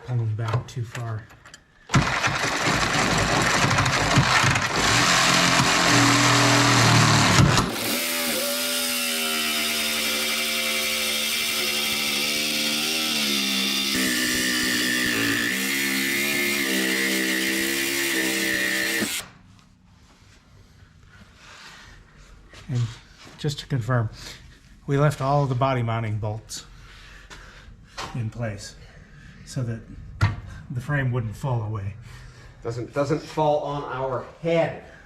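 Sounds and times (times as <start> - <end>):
reciprocating saw cutting steel: 4.2 - 19.3.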